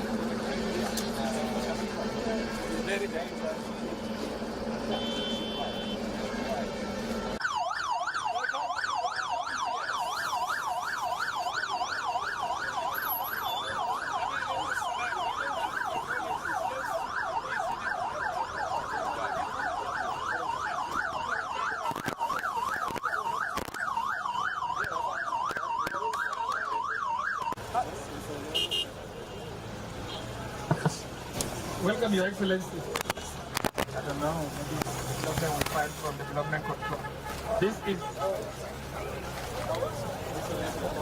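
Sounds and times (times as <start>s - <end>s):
siren in fast yelp: 7.4s - 27.6s.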